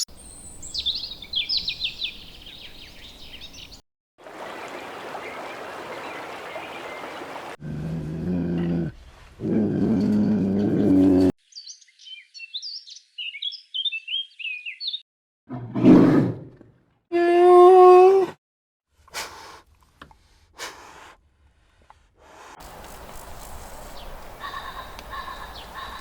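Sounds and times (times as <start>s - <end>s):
small bird chirping: 0.0s - 3.8s, 11.4s - 15.0s.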